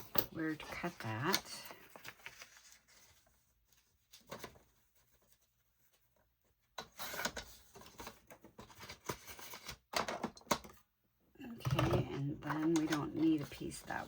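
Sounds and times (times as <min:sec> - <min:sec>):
craft paper rustling and crackling: 0:00.0 - 0:10.2, 0:12.1 - 0:14.0.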